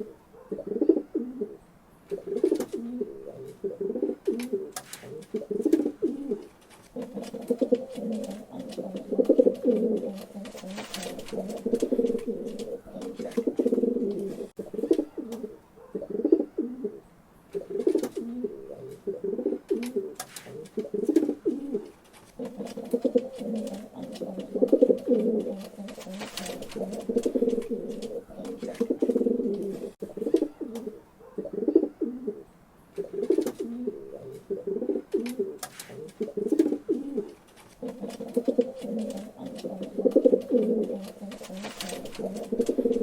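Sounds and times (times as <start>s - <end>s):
pigeons cooing: 0.0s - 43.0s.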